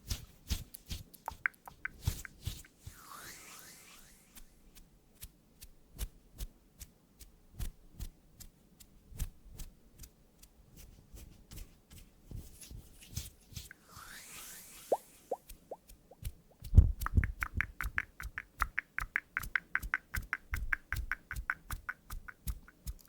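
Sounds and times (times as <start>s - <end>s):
brief swishing sweep: 2.8s - 4.8s, 13.7s - 15.8s.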